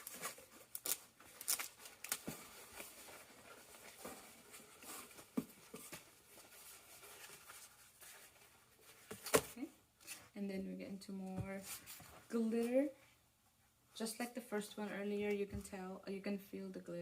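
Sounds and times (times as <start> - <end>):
vinyl sheets rustling and crinkling: 0.0 - 10.3.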